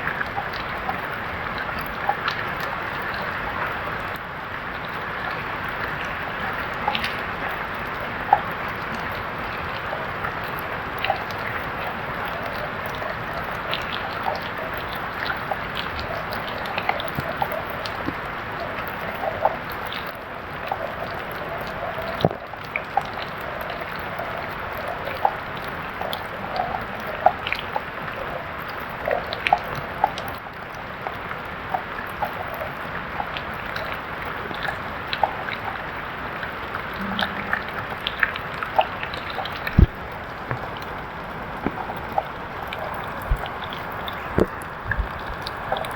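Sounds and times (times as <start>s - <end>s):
steady rain falling: 0.0s - 45.9s
water dripping: 0.1s - 45.9s.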